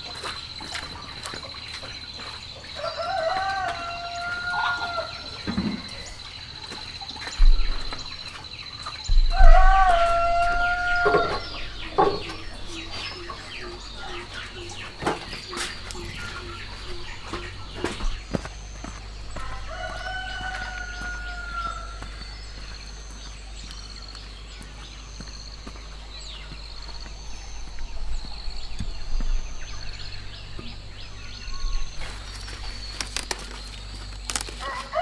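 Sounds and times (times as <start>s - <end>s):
rooster crowing: 2.8s - 5.5s, 9.2s - 14.5s, 19.4s - 22.2s, 34.6s - 35.0s.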